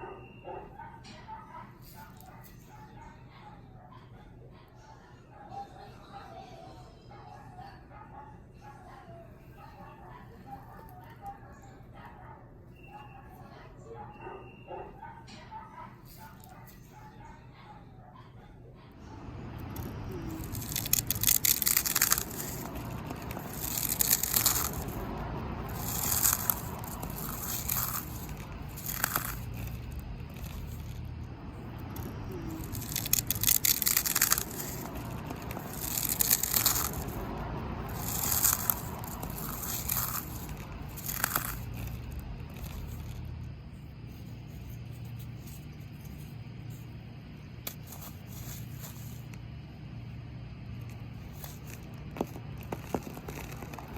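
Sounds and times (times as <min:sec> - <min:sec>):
steady low hum: 0:13.5 - 0:53.9
cookies crunching in a hand: 0:19.2 - 0:46.6, 0:47.5 - 0:49.6, 0:50.7 - 0:53.9.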